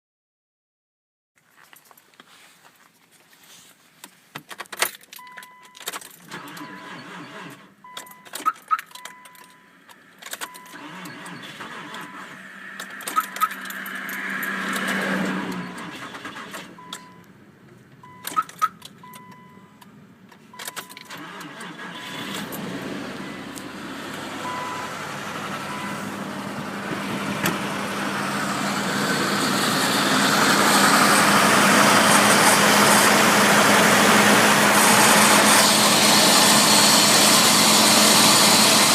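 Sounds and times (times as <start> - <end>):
car engine starting and running: 5.0 - 38.9
short electronic beeps: 5.2 - 5.8, 7.8 - 9.8, 10.4 - 13.7, 16.8 - 17.3, 18.0 - 19.8, 24.4 - 24.9, 25.6 - 26.1
keys jangling: 12.9 - 14.9.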